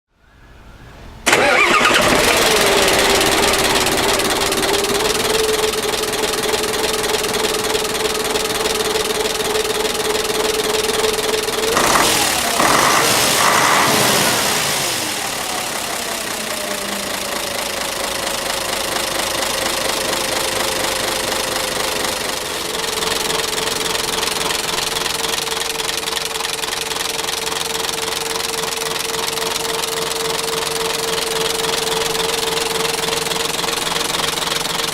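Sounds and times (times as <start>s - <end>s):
diesel engine starting and idling: 1.2s - 34.9s.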